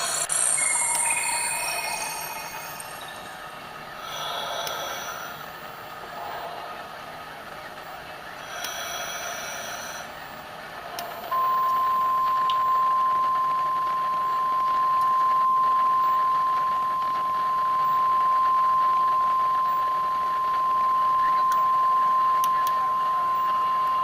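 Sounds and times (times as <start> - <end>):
cluster of high tones: 0.0 - 3.7
steady electronic beep tone: 0.0 - 5.5, 11.2 - 24.0.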